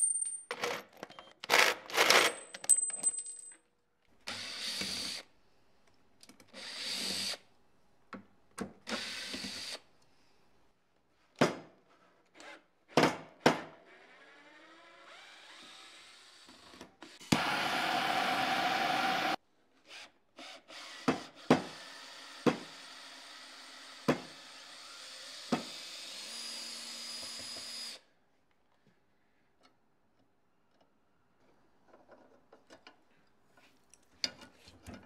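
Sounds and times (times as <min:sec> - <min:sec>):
metal parts clicking and clinking: 0:00.0 - 0:01.3, 0:02.1 - 0:03.6.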